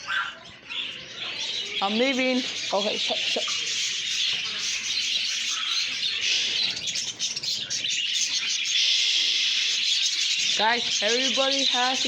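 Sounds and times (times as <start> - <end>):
birds chirping in chorus: 0.0 - 12.0.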